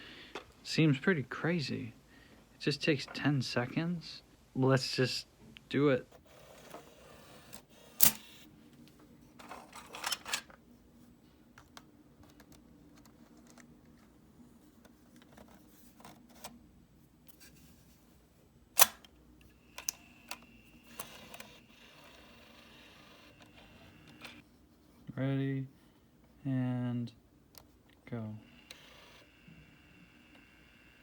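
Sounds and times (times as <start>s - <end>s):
camcorder cassette compartment clicks: 18.8s - 19.1s.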